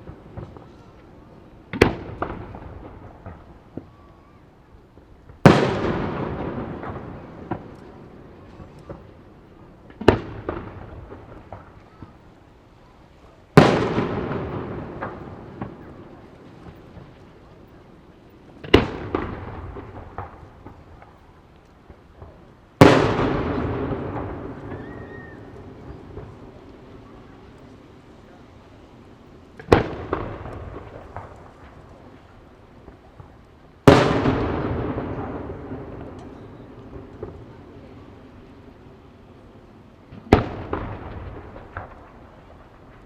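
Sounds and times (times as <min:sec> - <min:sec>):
small firework pops: 0:00.0 - 0:43.0.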